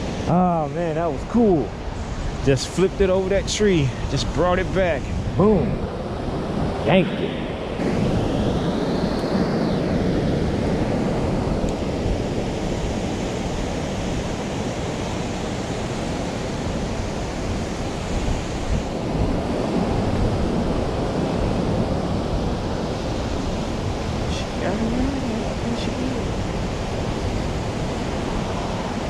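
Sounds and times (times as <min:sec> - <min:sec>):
wind buffeting microphone: 0:00.0 - 0:29.0
river water rushing: 0:12.6 - 0:29.0.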